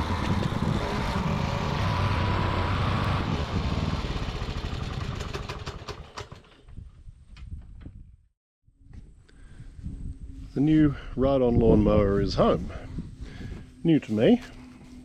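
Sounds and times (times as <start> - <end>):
engine running: 0.0 - 6.6.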